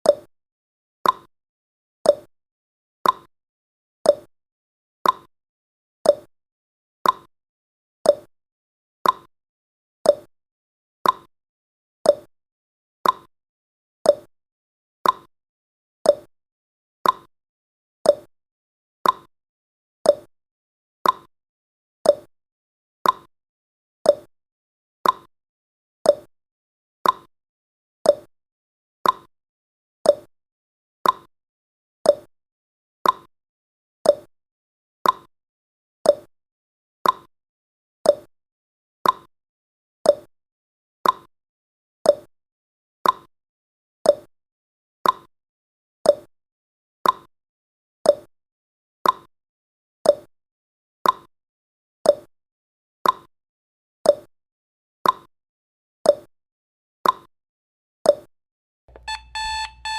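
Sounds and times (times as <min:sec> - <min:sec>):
timer ticking clicks: 0:01.0 - 0:01.3, 0:02.1 - 0:02.3, 0:03.0 - 0:03.3, 0:04.1 - 0:04.3, 0:05.0 - 0:05.3, 0:07.0 - 0:07.3, 0:08.1 - 0:08.3, 0:09.0 - 0:09.3, 0:10.1 - 0:10.3, 0:11.0 - 0:11.3, 0:13.0 - 0:13.3, 0:15.0 - 0:15.3, 0:17.0 - 0:17.3, 0:19.0 - 0:19.3, 0:21.0 - 0:21.3, 0:58.9 - 0:59.9.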